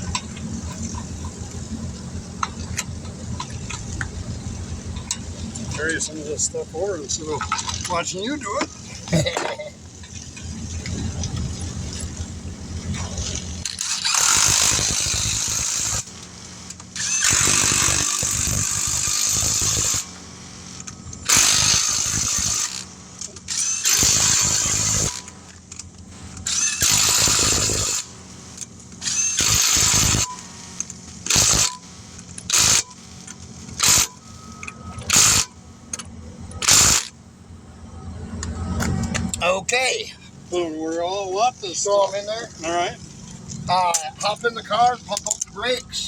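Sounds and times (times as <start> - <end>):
impact wrench bursts: 13.0 - 35.6, 36.5 - 37.2.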